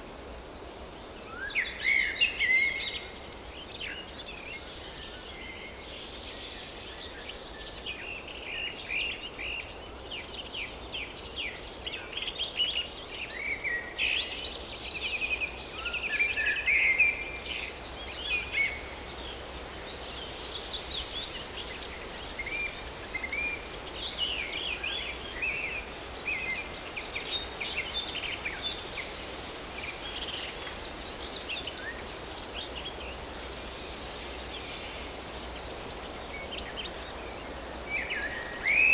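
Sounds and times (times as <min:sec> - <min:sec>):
steady background hiss: 0:00.0 - 0:38.9
songbirds chirping and trilling: 0:11.2 - 0:38.9.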